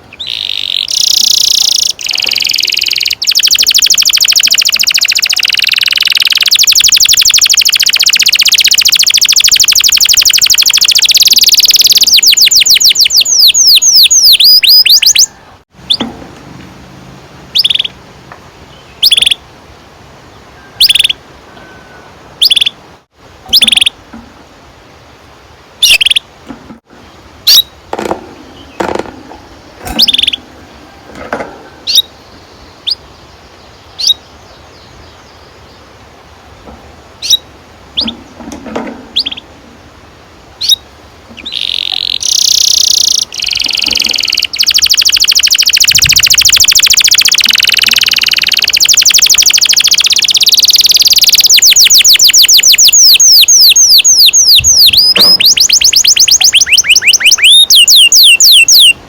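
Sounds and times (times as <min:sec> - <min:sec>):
canary singing and trilling: 0:00.0 - 0:16.1, 0:17.5 - 0:18.0, 0:18.7 - 0:19.4, 0:20.8 - 0:21.2, 0:22.4 - 0:22.8, 0:23.5 - 0:24.0, 0:25.8 - 0:26.3, 0:27.4 - 0:27.8, 0:28.5 - 0:30.6, 0:31.8 - 0:33.2, 0:33.8 - 0:35.7, 0:37.2 - 0:39.5, 0:40.6 - 0:59.0.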